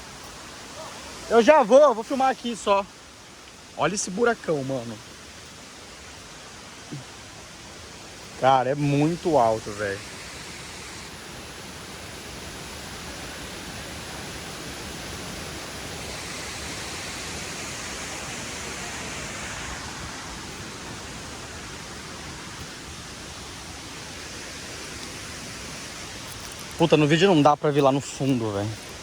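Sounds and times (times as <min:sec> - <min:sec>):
waterfall rushing: 0:00.0 - 0:29.0.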